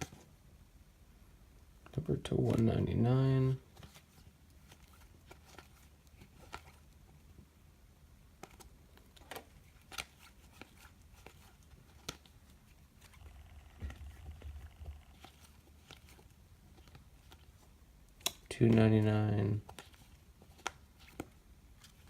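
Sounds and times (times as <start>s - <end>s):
cards rustling: 1.8s - 7.3s, 8.3s - 22.0s
trading cards clicking and tapping: 13.1s - 16.2s.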